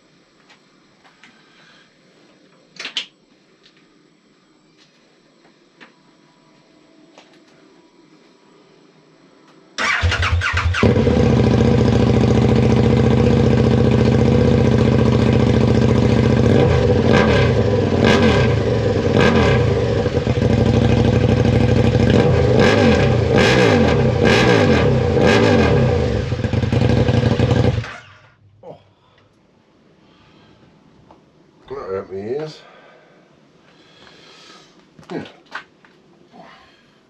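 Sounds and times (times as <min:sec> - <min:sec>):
loud motorcycle engine revving: 0:10.1 - 0:28.2.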